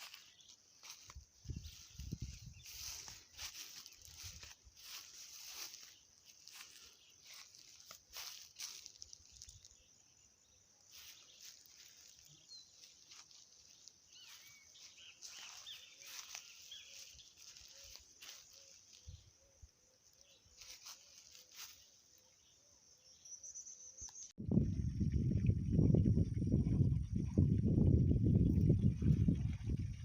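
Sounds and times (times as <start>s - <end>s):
faint bird chirps: 0.0s - 26.0s.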